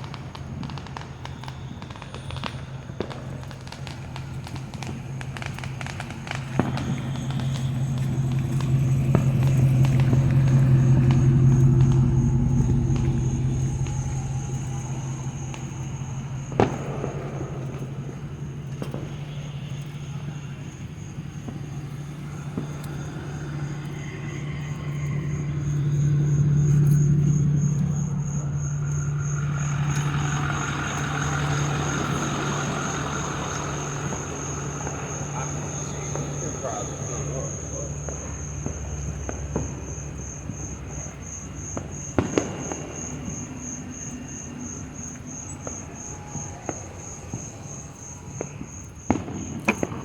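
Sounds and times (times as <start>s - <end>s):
low engine-like hum: 0.0s - 50.0s
thin high whine: 5.5s - 41.2s.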